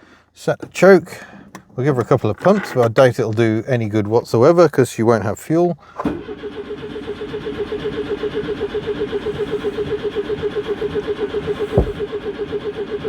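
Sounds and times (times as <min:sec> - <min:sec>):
engine cranking on starter: 0:05.9 - 0:13.0.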